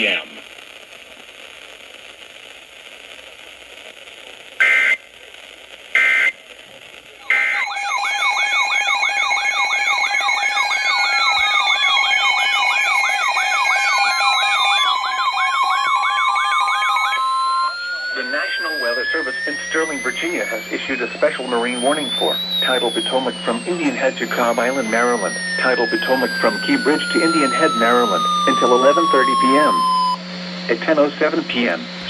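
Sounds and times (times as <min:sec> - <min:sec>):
low static hiss: 0:00.0 - 0:07.7, 0:17.1 - 0:32.0
short electronic data bursts: 0:04.6 - 0:05.0, 0:05.9 - 0:06.4, 0:07.3 - 0:30.2
warbling electronic alert tone: 0:07.3 - 0:30.2.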